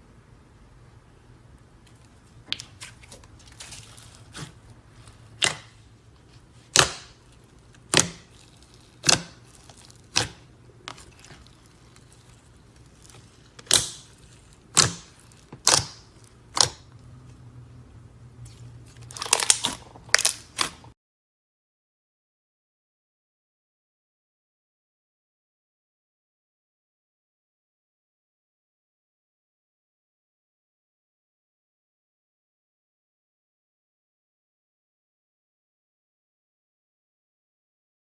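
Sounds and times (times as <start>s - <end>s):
slime crackling: 1.8s - 17.1s, 18.4s - 20.9s
slime popping: 1.9s - 5.8s, 6.6s - 16.9s, 18.8s - 20.8s.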